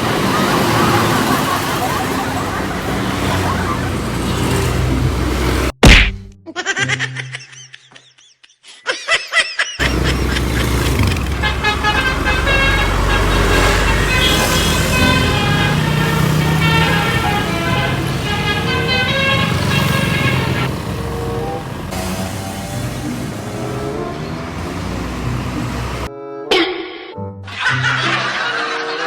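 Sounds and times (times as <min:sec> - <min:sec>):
bus horn tooting a tune: 0:00.0 - 0:04.8, 0:09.8 - 0:26.1
low engine rumble: 0:09.8 - 0:26.1.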